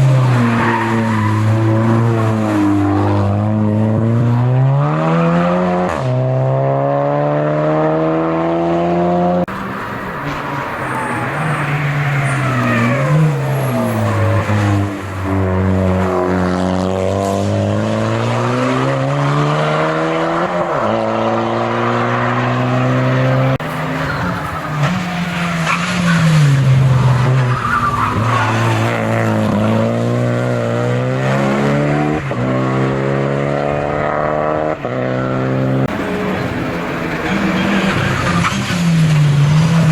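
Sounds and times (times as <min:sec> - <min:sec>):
race car engine revving: 0:00.0 - 0:39.9.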